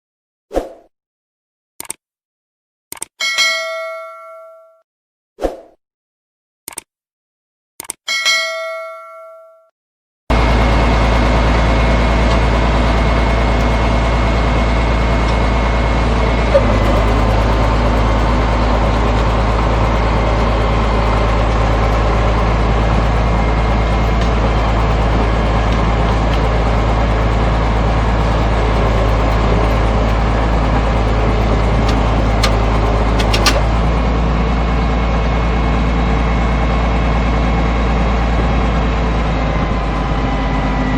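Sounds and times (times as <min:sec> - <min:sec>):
click: 0:01.8 - 0:02.0, 0:02.9 - 0:03.1, 0:06.7 - 0:06.9, 0:07.8 - 0:08.0, 0:24.0 - 0:24.4, 0:31.8 - 0:33.8
bulldozer diesel engine rumbling: 0:10.3 - 0:40.9.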